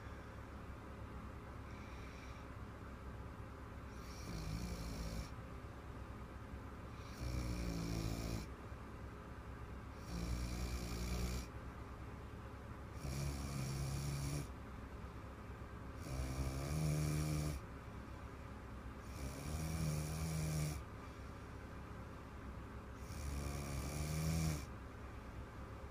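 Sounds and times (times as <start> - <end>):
girl snoring: 4.0 - 5.3, 7.0 - 8.5, 10.0 - 11.5, 13.0 - 14.5, 16.0 - 17.6, 19.0 - 20.8, 23.0 - 24.7.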